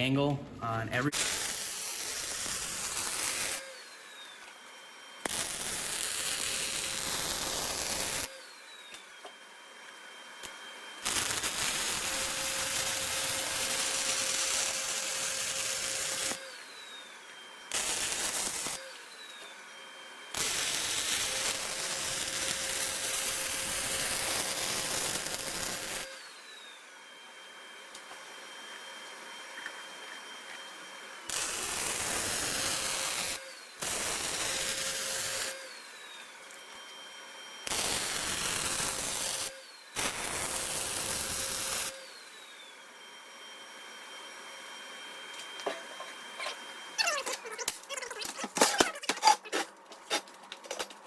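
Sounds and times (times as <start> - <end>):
arc welding crackling: 0.0 - 3.7, 5.2 - 8.3, 11.0 - 16.4, 17.7 - 18.9, 20.3 - 26.1, 31.3 - 35.7, 37.7 - 42.0.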